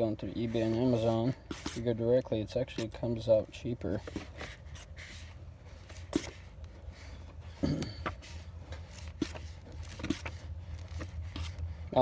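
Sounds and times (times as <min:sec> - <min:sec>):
handling knocks and scrapes: 0:00.0 - 0:12.0
low steady hum: 0:00.0 - 0:12.0.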